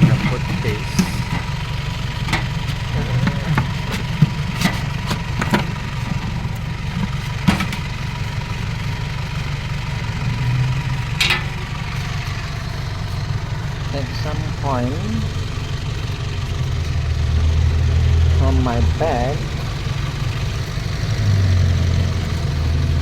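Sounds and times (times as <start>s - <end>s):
low engine-like hum: 0.0s - 23.0s
sharp knocks and clicks: 2.2s - 7.9s.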